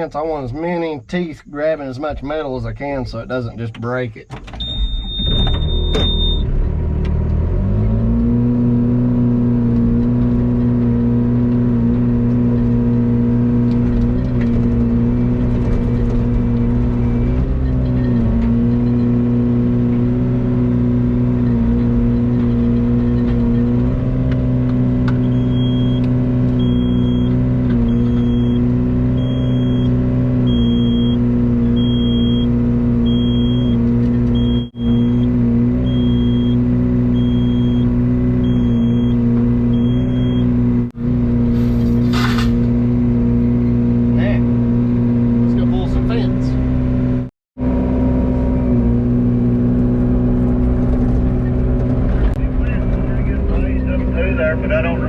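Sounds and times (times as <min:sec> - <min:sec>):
electronic warning beeper: 0:04.6 - 0:06.4, 0:25.2 - 0:26.0, 0:26.6 - 0:28.6, 0:29.2 - 0:29.9, 0:30.5 - 0:31.2, 0:31.8 - 0:32.5, 0:33.1 - 0:33.8, 0:34.4 - 0:36.6, 0:37.2 - 0:40.5
excavator diesel engine running: 0:30.5 - 0:42.1.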